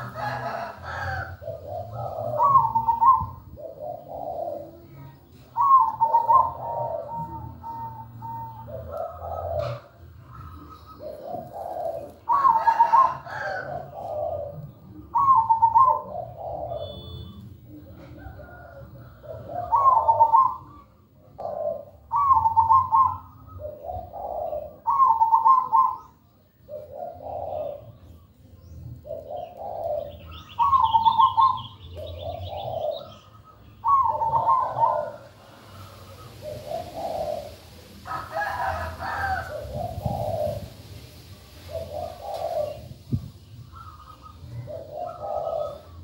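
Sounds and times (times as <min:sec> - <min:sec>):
dove rhythmic cooing: 0:00.0 - 0:46.0
faint high chirping: 0:14.6 - 0:18.7.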